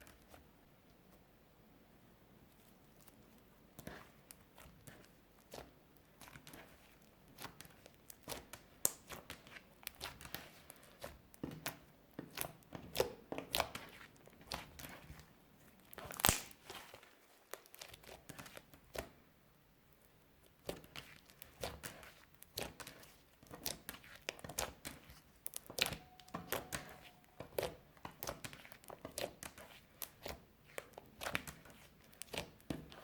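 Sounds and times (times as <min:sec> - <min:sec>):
slime squishing and popping: 0:15.9 - 0:16.7.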